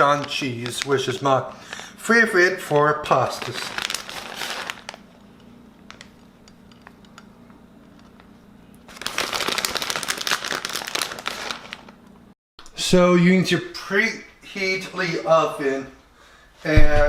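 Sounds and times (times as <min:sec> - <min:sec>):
plastic packaging crinkling: 0:00.0 - 0:02.0, 0:02.6 - 0:05.1, 0:08.9 - 0:12.1.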